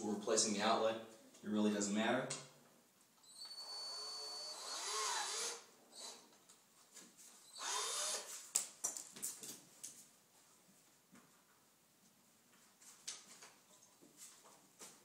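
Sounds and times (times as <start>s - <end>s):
power screwdriver running: 3.6s - 6.2s, 7.6s - 8.3s.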